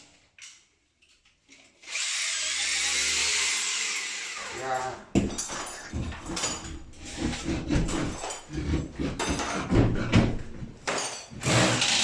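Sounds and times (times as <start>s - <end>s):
tools knocking and clattering: 5.1s - 12.0s.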